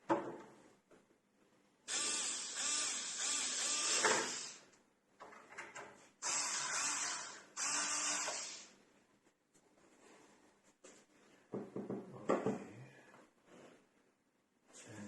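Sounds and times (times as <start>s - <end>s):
electric screwdriver running: 1.9s - 4.6s, 6.2s - 8.7s.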